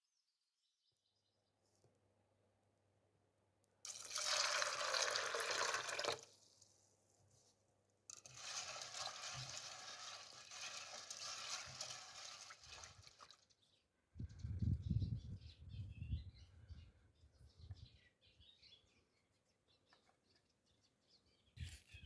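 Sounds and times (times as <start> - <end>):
water pouring: 3.9 - 6.3, 8.1 - 13.6.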